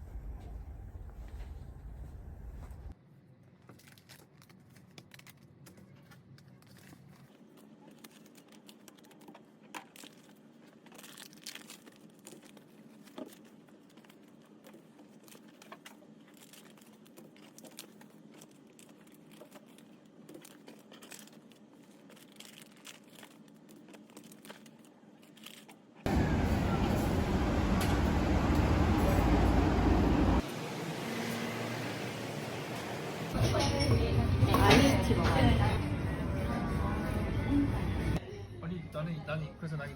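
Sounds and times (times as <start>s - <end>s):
low room hum: 0.0s - 3.0s.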